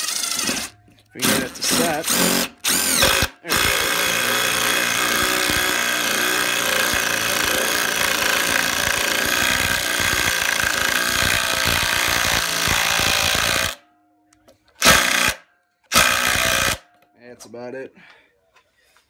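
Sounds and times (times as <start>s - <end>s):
impact driver hammering: 0.0s - 13.8s.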